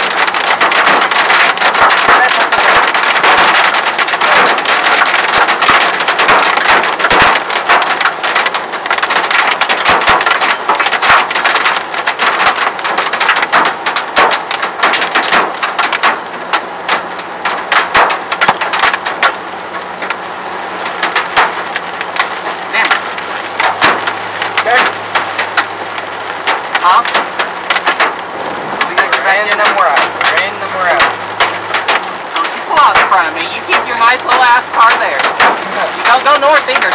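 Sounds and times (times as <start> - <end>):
hail striking car roof and glass: 0.0 - 36.9.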